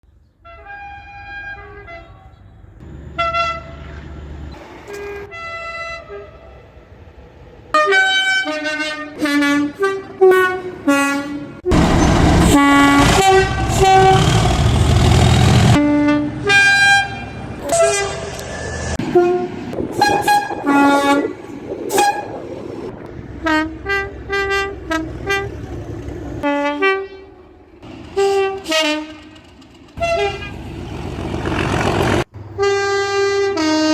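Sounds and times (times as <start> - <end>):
two-tone air horn blasts: 3.2 - 3.8, 4.9 - 6.6, 7.8 - 22.4, 28.2 - 29.4, 30.0 - 30.6, 32.6 - 33.9
loud noise: 11.7 - 15.8.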